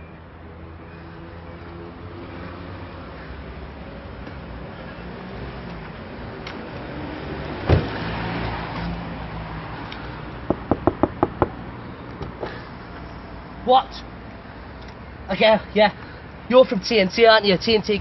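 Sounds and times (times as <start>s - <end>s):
loud thump: 7.7s - 8.0s
car engine humming: 10.4s - 12.4s
sharp knocks: 10.5s - 11.6s.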